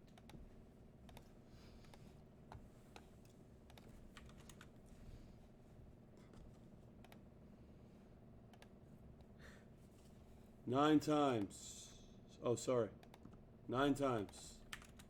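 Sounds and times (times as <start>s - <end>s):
low steady hum: 0.2s - 15.0s
typing on computer keyboard: 3.7s - 4.7s, 14.2s - 15.0s.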